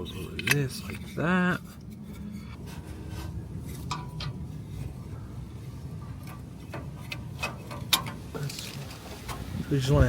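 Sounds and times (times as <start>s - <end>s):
light scraping: 0.0s - 10.0s
steady low rumble: 0.0s - 10.0s
small metallic knocks: 3.7s - 4.4s, 6.0s - 9.5s.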